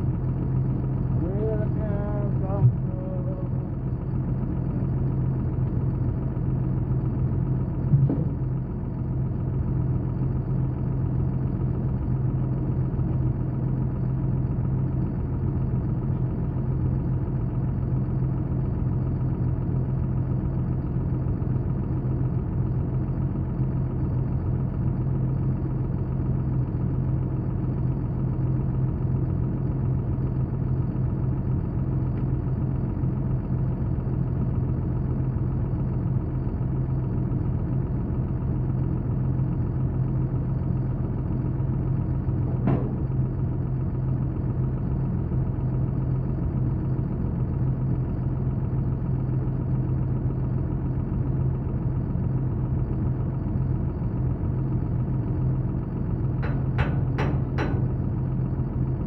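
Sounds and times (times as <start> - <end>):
engine idling: 0.0 - 59.0
brief knock: 7.9 - 8.4, 42.5 - 43.2, 56.4 - 58.3.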